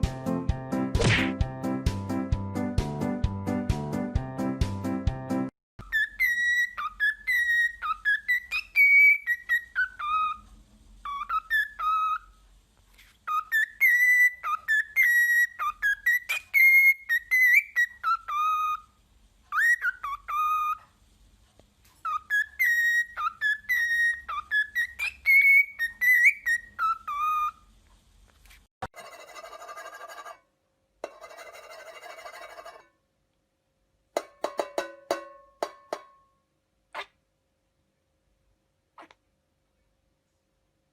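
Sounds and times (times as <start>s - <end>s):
parrot whistling a tune: 5.8s - 12.4s, 13.2s - 21.0s, 22.0s - 27.7s
harsh buzzy parrot sound: 36.9s - 37.2s, 38.9s - 39.3s.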